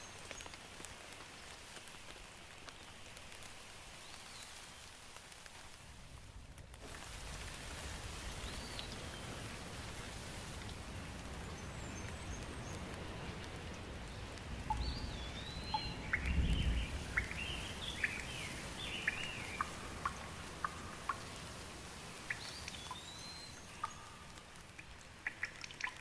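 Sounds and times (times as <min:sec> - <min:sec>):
steady rain: 0:00.0 - 0:26.0
birds chirping: 0:11.3 - 0:21.4, 0:22.1 - 0:24.4.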